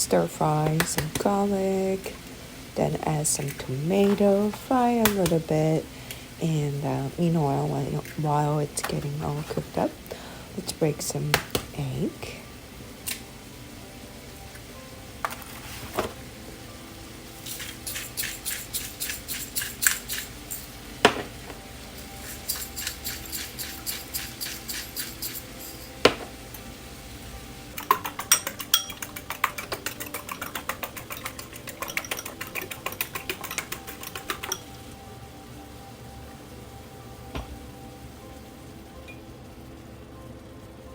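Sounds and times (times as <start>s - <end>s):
eggs beaten in bowl clicking: 0.4s - 1.9s, 3.2s - 6.6s, 11.3s - 11.8s, 17.5s - 26.3s, 27.7s - 34.8s
egg cracking on bowl rim: 27.8s - 34.6s.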